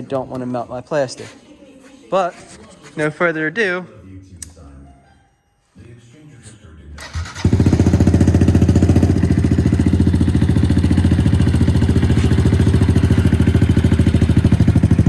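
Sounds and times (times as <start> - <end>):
motorcycle engine idling: 7.0 - 15.0.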